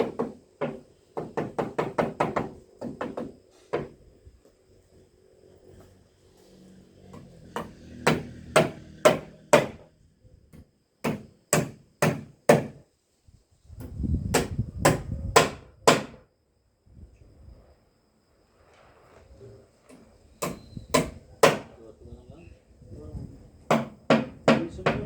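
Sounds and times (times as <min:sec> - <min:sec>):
hammer blows on wood: 0:13.8 - 0:16.2, 0:20.4 - 0:21.7, 0:23.7 - 0:25.0.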